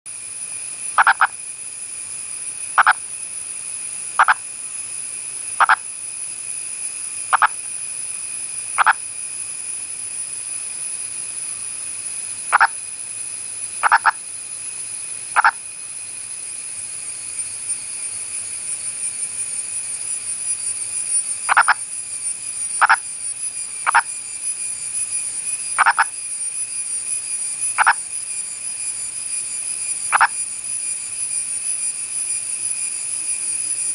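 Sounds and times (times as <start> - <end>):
frog calling: 1.0 - 1.4, 2.8 - 3.0, 4.2 - 4.4, 5.6 - 5.8, 7.3 - 7.6, 8.8 - 9.0, 12.5 - 12.8, 13.8 - 14.2, 15.4 - 15.6, 21.5 - 21.8, 22.8 - 23.0, 23.8 - 24.1, 25.8 - 26.2, 27.8 - 28.0, 30.1 - 30.4
high-pitched background drone: 8.7 - 9.1, 21.1 - 24.2, 29.8 - 31.1.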